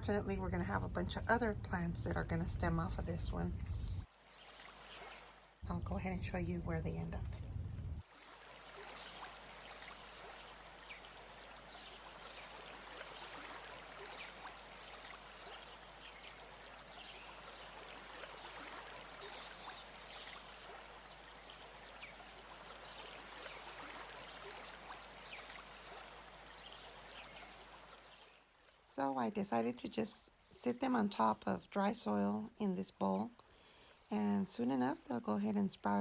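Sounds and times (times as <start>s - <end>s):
low hum: 0.0s - 4.1s, 5.6s - 8.0s
steady rushing noise: 5.6s - 8.0s.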